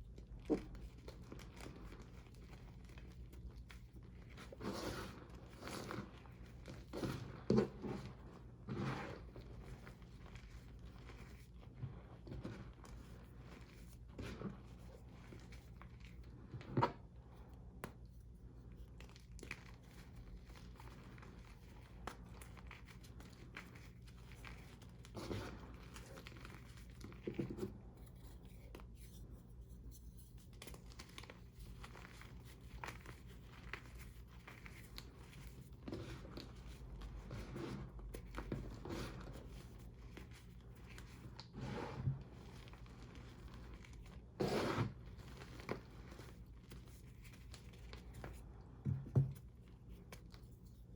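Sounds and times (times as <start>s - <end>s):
chalk crunching and crumbling: 17.9s - 48.6s.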